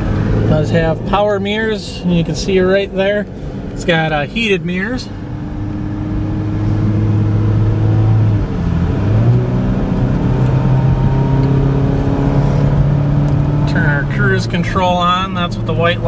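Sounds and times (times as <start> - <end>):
car engine at highway speed: 0.0 - 16.0
road noise: 0.0 - 16.0.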